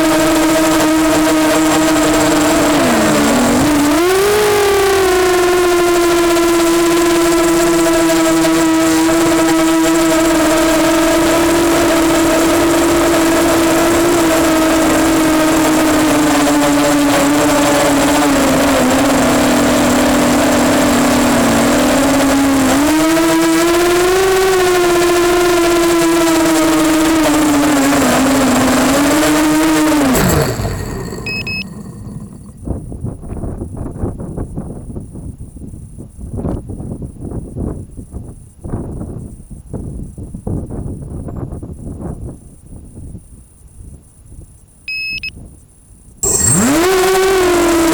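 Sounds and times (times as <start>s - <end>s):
quadcopter motors whining: 0.0s - 32.8s, 44.9s - 45.3s, 46.2s - 47.9s.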